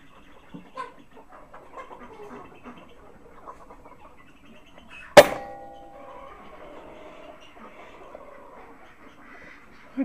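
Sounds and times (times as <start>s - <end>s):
chickens clucking: 0.0s - 10.0s
air rifle shot: 5.2s - 5.8s.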